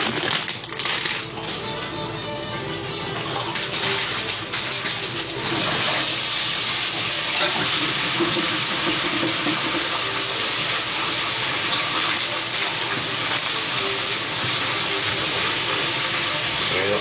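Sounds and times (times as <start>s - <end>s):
fries sizzling in hot oil: 3.2s - 17.0s.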